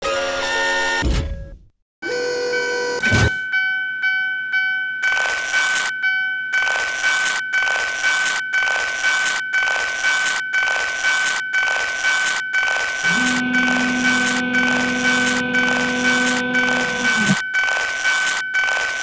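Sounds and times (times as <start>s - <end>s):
railroad crossing bell ringing: 13.0s - 17.7s.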